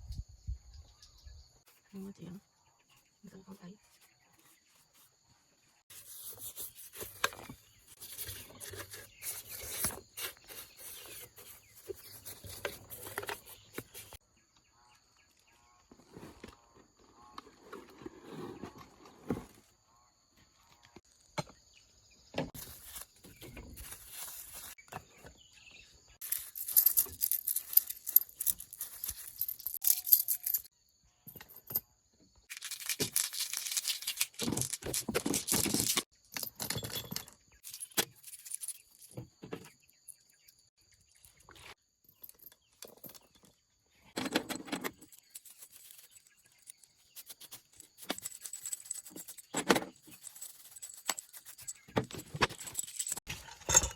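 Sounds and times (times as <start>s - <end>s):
metal tools clinking and rattling: 26.2s - 30.7s, 32.5s - 39.2s, 44.2s - 53.9s
scraping or rubbing: 44.8s - 53.9s.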